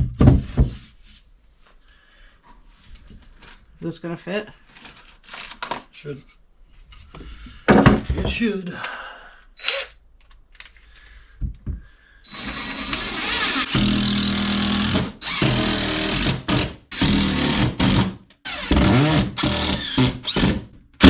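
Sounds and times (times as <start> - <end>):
power drill running: 9.6 - 9.9, 12.3 - 20.6.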